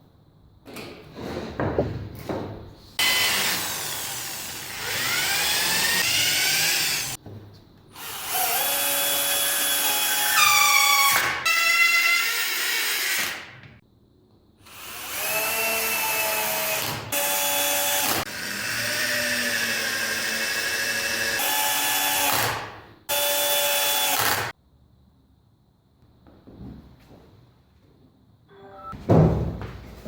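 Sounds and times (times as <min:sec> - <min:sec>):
power drill motor whine: 0:03.0 - 0:07.2, 0:23.1 - 0:24.4.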